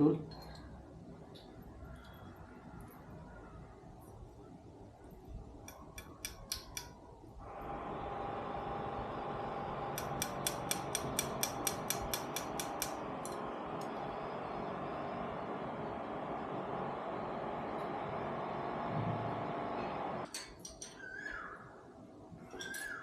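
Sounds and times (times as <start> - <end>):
metallic tool clicks: 5.6 - 7.0, 10.0 - 13.4, 20.3 - 21.0.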